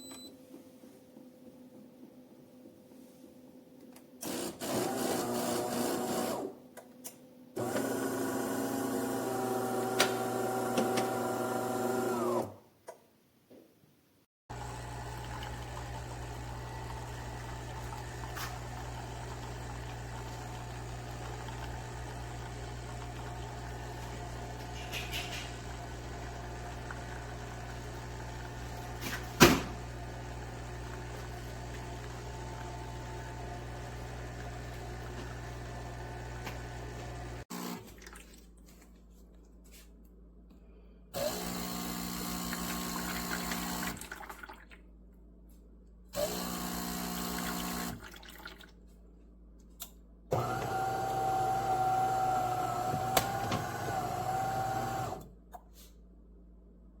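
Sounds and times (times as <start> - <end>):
espresso machine humming: 7.6 - 12.4, 14.5 - 37.4, 41.2 - 43.9, 46.2 - 48.0, 50.4 - 55.2
pump motor whining: 7.6 - 12.5, 14.5 - 37.8, 41.2 - 44.0, 46.2 - 48.0, 50.3 - 55.3.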